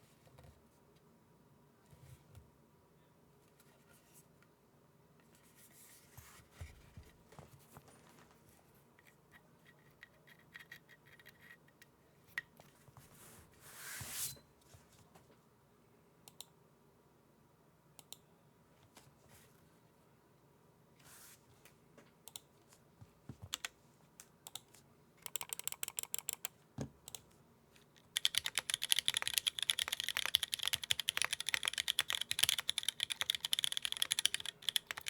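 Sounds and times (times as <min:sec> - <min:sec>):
keyboard keys clicking: 0:25.2 - 0:26.5, 0:28.0 - 0:35.0.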